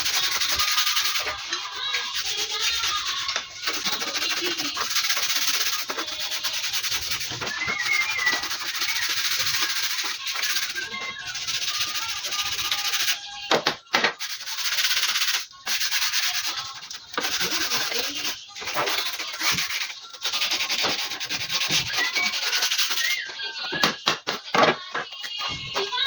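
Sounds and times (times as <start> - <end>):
hand sanding rasping strokes: 0.0 - 13.2, 14.2 - 23.1.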